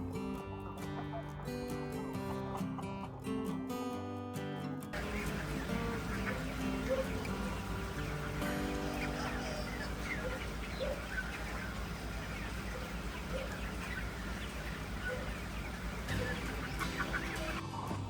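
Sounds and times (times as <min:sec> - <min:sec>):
chickens clucking: 0:00.3 - 0:03.1, 0:05.0 - 0:18.0
steady low hum: 0:05.0 - 0:17.6.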